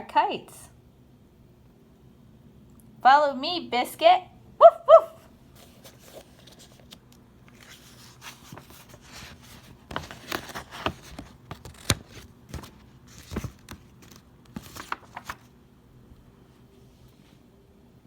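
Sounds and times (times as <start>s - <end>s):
paper pages rustling and turning: 5.5s - 15.6s.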